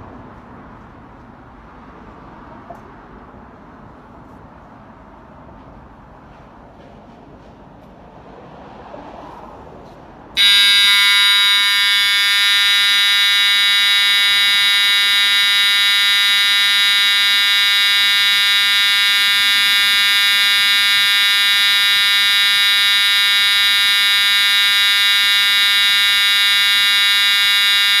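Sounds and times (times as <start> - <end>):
continuous alarm buzzer: 10.4 - 28.0.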